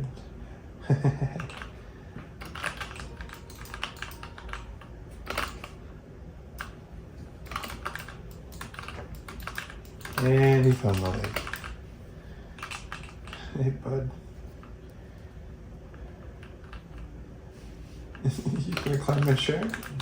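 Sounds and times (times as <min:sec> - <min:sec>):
computer keyboard keys clicking: 0:01.4 - 0:01.8, 0:02.4 - 0:05.8, 0:06.6 - 0:06.8, 0:07.4 - 0:11.8, 0:12.6 - 0:13.4, 0:16.3 - 0:17.1, 0:18.1 - 0:20.0.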